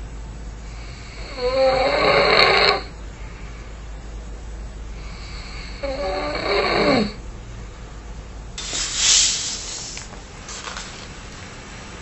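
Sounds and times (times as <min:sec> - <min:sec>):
man snoring: 0:00.7 - 0:02.9, 0:05.0 - 0:07.2.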